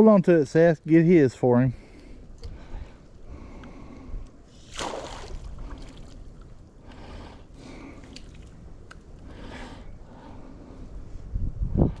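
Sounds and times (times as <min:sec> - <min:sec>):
water splashing: 0:04.6 - 0:06.4.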